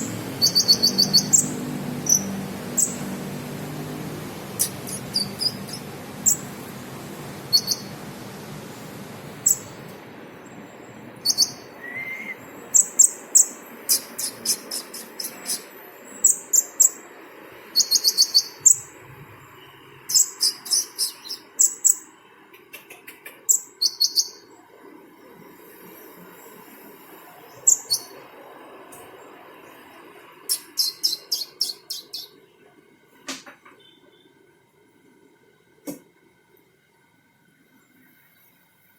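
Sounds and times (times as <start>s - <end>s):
bird high-pitched chirps: 0.0s - 3.1s, 4.6s - 6.5s, 7.5s - 8.0s, 9.4s - 9.8s, 11.2s - 17.1s, 17.8s - 18.9s, 20.1s - 22.1s, 23.5s - 24.5s, 27.5s - 28.2s, 30.5s - 32.4s.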